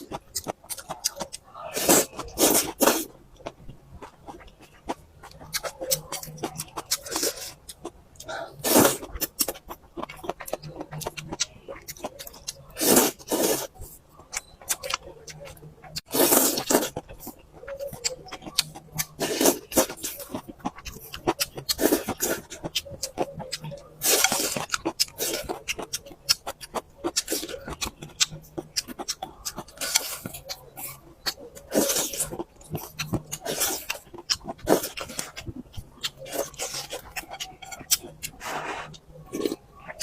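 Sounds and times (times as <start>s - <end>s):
wet chewing and lip-smacking: 0.0s - 40.0s
noodle slurping: 1.6s - 3.2s, 8.6s - 9.3s, 12.7s - 14.0s, 16.1s - 18.0s, 24.0s - 25.8s.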